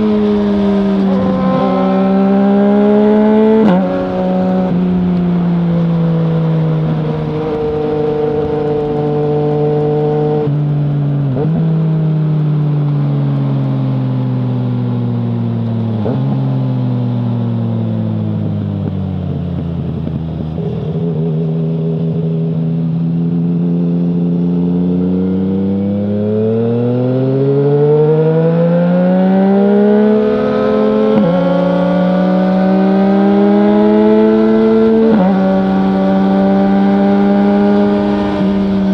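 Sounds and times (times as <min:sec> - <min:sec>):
motorcycle engine accelerating: 0:00.0 - 0:38.9.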